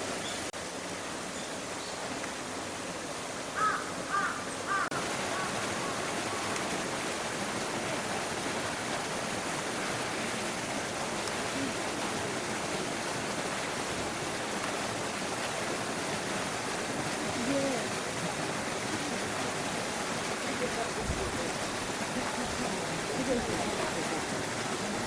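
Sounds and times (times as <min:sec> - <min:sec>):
running water rushing: 0:00.0 - 0:25.0
faint voices: 0:17.1 - 0:25.0.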